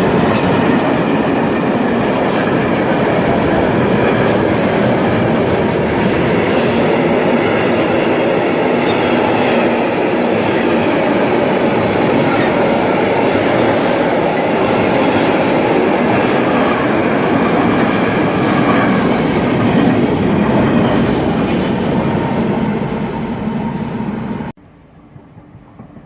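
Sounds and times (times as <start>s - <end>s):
clickety-clack of wheels: 0.0s - 8.0s
train rumbling past: 0.0s - 26.0s.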